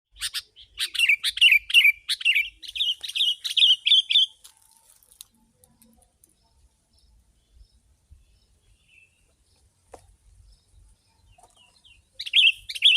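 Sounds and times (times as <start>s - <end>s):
bird chirping rapidly: 0.1s - 4.4s, 10.4s - 12.9s.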